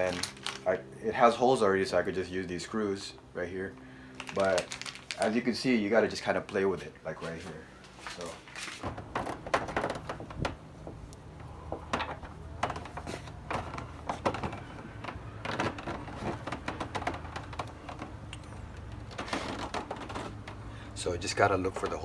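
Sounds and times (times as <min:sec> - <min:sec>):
steady low hum: 0:00.0 - 0:22.0
plastic clicks and light knocks: 0:08.8 - 0:20.6.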